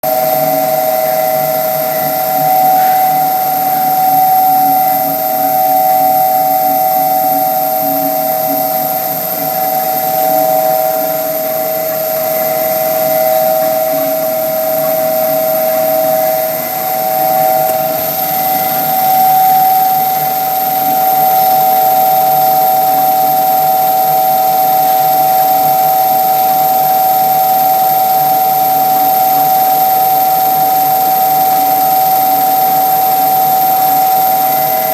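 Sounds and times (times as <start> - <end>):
furnace machine hum with whine: 0.0 - 34.9.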